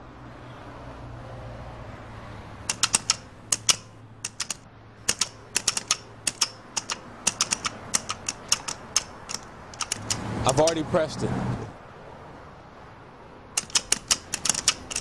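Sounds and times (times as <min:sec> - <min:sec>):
crosswalk button clicks: 0:02.7 - 0:10.8.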